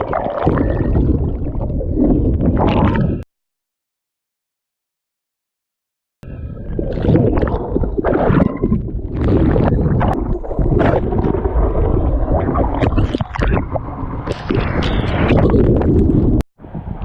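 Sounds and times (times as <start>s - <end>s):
water buffeting microphone: 0.0s - 3.2s, 6.3s - 17.0s
wind buffeting microphone: 7.2s - 17.0s.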